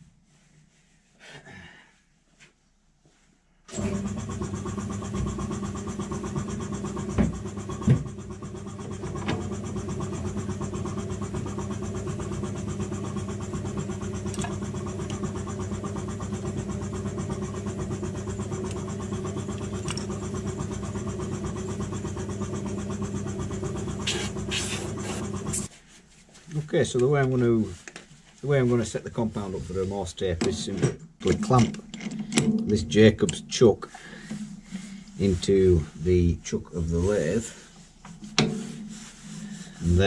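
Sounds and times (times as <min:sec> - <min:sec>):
metal lathe motor hum: 0:03.7 - 0:25.7.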